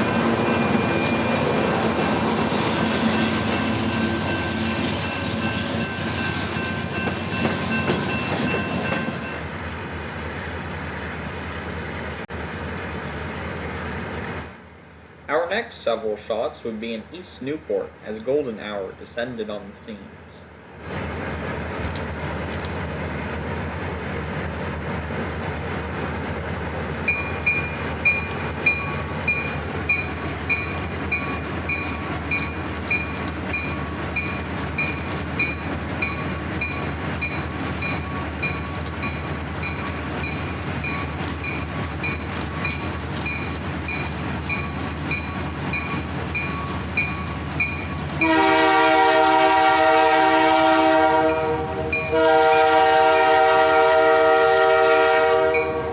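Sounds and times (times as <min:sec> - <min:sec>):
diesel locomotives rumbling: 0:00.0 - 0:55.9
locomotive horn chord: 0:48.2 - 0:55.9.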